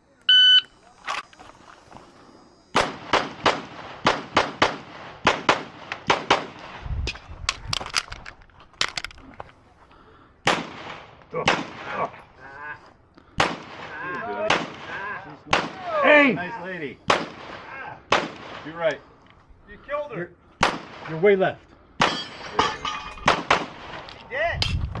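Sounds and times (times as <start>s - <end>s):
pistol shots: 2.7s - 6.7s, 10.4s - 12.0s, 13.4s - 15.9s, 17.1s - 18.8s, 20.6s - 21.2s, 23.2s - 24.1s.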